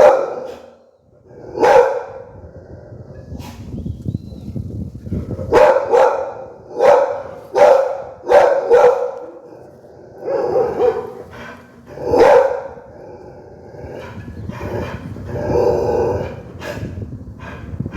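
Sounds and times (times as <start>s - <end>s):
dog barking: 0.0s - 0.8s, 1.5s - 2.3s, 5.5s - 11.3s, 12.0s - 12.9s.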